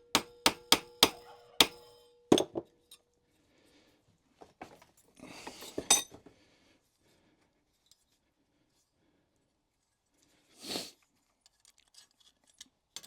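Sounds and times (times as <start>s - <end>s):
hammer striking metal rivet: 0.0s - 2.6s.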